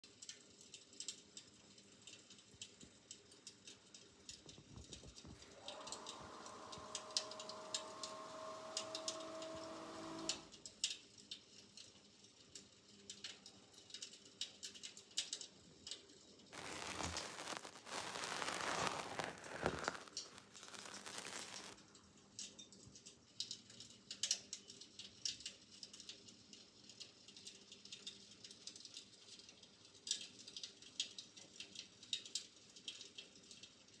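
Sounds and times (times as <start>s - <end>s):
crackling fire sound effect: 4.3s - 8.9s, 16.6s - 21.8s.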